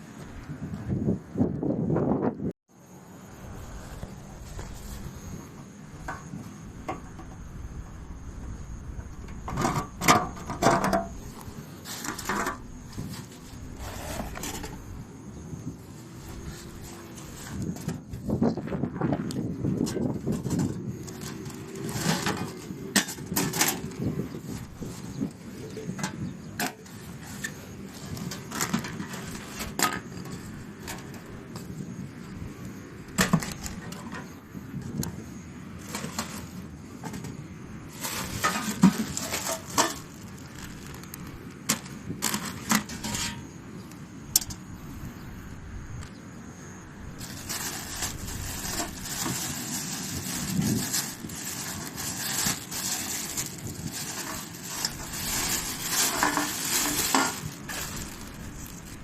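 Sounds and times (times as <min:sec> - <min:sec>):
steady hiss: 0:02.7 - 0:59.0.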